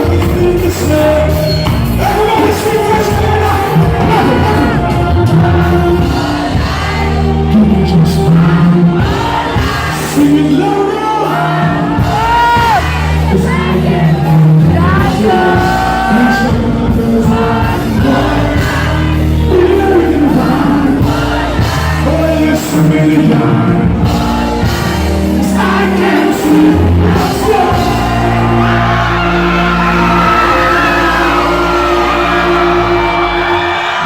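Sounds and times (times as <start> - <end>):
person singing: 0.0 - 34.0
crowd shouting: 10.9 - 16.5, 24.5 - 34.0.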